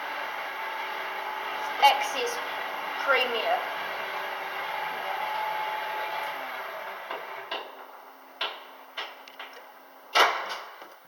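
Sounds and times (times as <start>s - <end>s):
platform lift whirring hum: 0.0s - 10.2s
sharp clicks and knocks: 7.1s - 11.0s.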